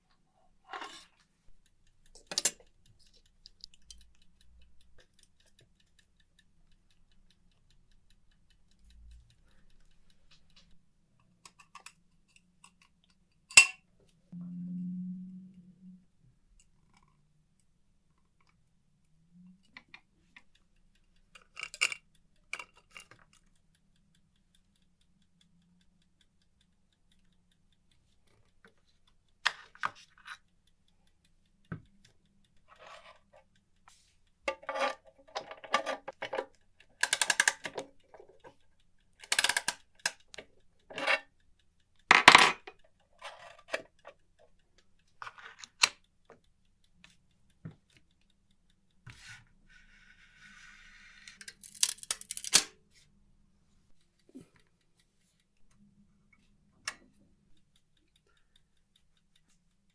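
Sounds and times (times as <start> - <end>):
clicks and metallic clinks: 2.1 - 4.2, 11.4 - 13.9, 21.4 - 23.4.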